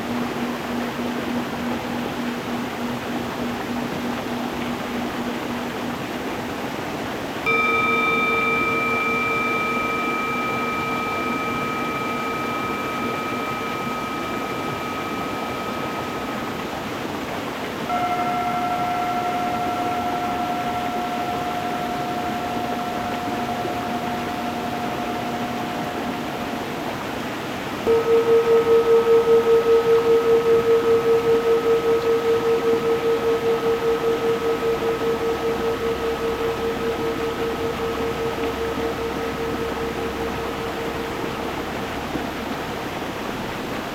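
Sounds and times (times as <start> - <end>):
singing bowl ringing: 0.0 - 6.6, 7.4 - 43.9.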